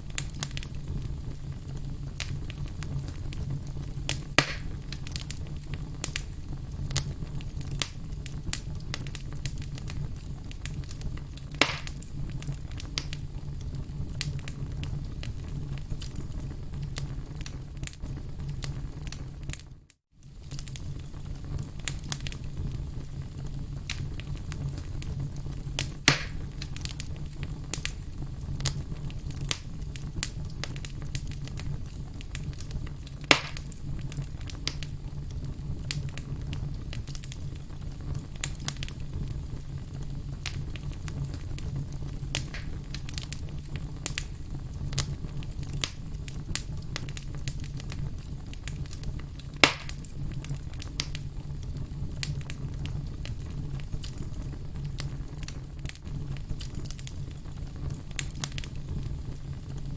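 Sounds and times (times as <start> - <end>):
firewood crackling: 0.0 - 59.9
sharp pops of burning wood: 0.1 - 0.8, 2.2 - 3.4, 4.0 - 13.2, 23.9 - 25.1, 25.7 - 28.0, 28.6 - 34.9, 40.4 - 51.3, 53.3 - 59.8.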